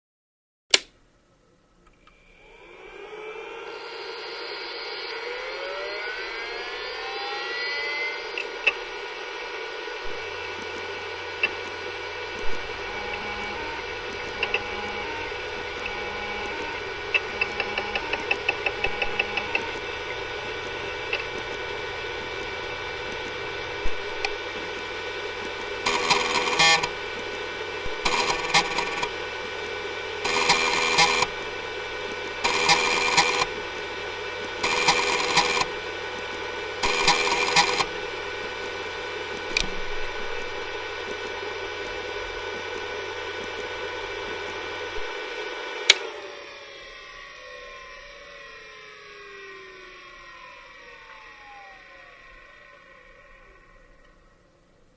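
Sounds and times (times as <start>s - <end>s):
hard disk drive whine: 1.6s - 54.9s
hard disk clicks: 12.4s - 24.5s, 25.4s - 27.0s, 27.8s - 29.3s, 30.2s - 31.4s, 32.4s - 33.9s, 34.6s - 35.8s, 36.8s - 38.1s
buzzing bursts: 25.8s - 27.0s, 27.8s - 29.2s, 30.2s - 31.5s, 32.4s - 33.5s, 34.6s - 35.7s, 36.8s - 38.0s.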